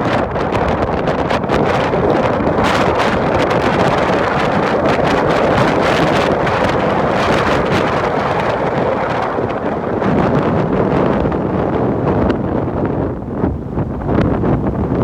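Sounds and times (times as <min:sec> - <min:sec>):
ocean waves on a beach: 0:00.0 - 0:12.0
strong wind on microphone: 0:00.0 - 0:15.0.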